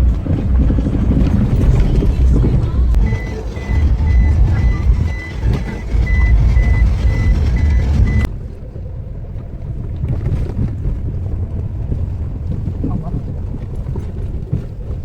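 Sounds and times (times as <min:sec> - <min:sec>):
dull rumbling noise: 0:00.0 - 0:15.0
vehicle engine rumbling: 0:00.0 - 0:15.0
electronic warning beeps: 0:02.9 - 0:08.3.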